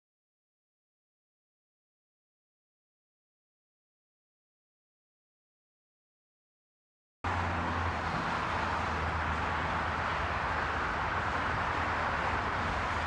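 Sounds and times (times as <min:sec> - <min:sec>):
steady rushing noise: 0:07.2 - 0:13.0.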